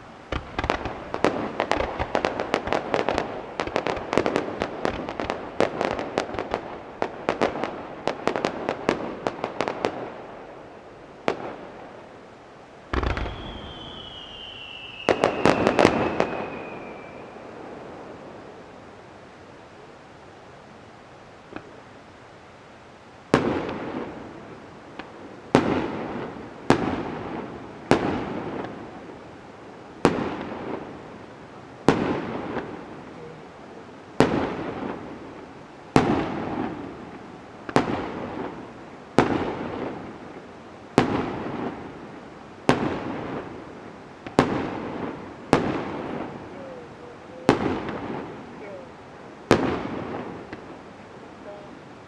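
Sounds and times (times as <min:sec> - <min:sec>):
fireworks bangs with echoing rumble: 0:00.3 - 0:10.3, 0:12.9 - 0:18.1, 0:23.3 - 0:29.2, 0:30.0 - 0:31.1, 0:31.8 - 0:33.1, 0:34.2 - 0:50.8.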